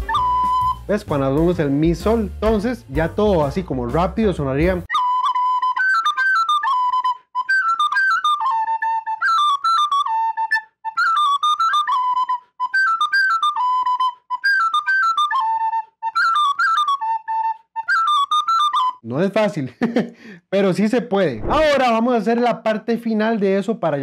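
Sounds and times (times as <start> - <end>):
recorder playing: 0.0 - 19.0.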